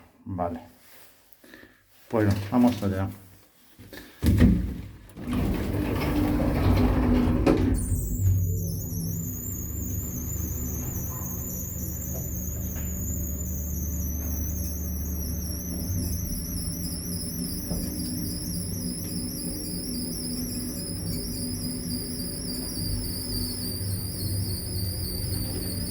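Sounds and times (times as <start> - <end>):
lift squealing: 5.2 - 25.9
low drive hum: 5.2 - 25.9.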